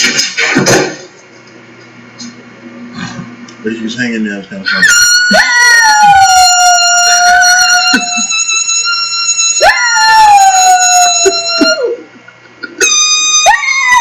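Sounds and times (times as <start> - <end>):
dog howling: 4.7 - 12.1, 12.8 - 14.0.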